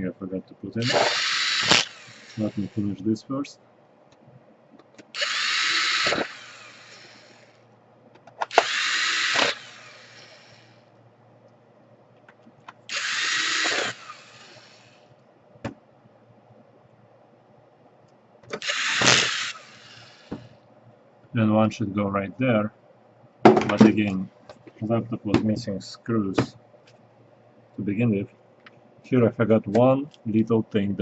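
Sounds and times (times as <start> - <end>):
electric screwdriver driving screws: 0.8 - 2.9, 5.1 - 7.6, 8.4 - 10.8, 12.9 - 15.1, 18.6 - 20.5.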